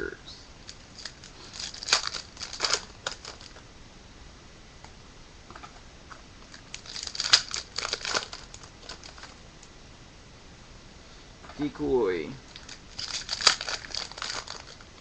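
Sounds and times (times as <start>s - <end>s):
card pack wrapper crinkling: 0.7s - 3.6s, 6.5s - 9.4s, 12.5s - 15.0s.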